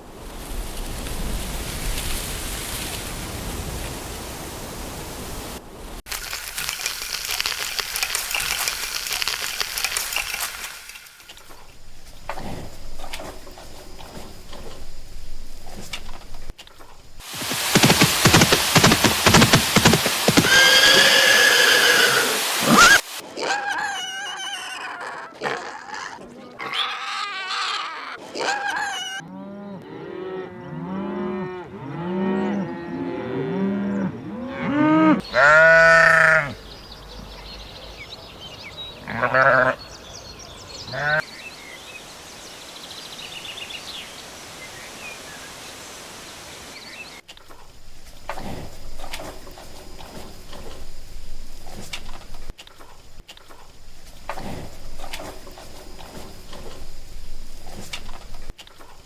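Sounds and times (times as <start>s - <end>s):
animals bleating: 19.3s - 29.2s, 35.3s - 36.6s, 39.0s - 39.8s, 40.9s - 41.2s.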